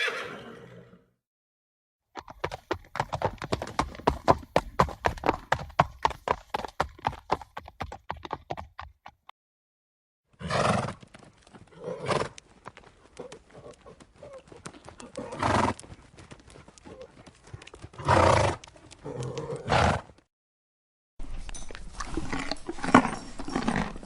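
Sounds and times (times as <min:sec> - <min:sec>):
horse galloping hoofbeats: 0:02.1 - 0:09.3, 0:10.4 - 0:20.3
horse snorting: 0:13.2 - 0:15.8, 0:16.8 - 0:20.2, 0:22.0 - 0:24.0.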